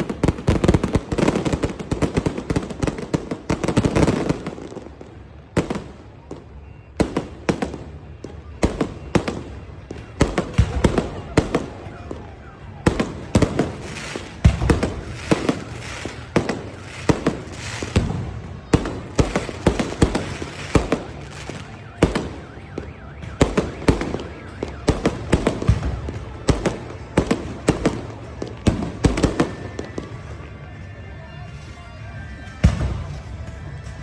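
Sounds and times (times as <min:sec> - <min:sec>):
fireworks bangs: 0:00.0 - 0:30.4.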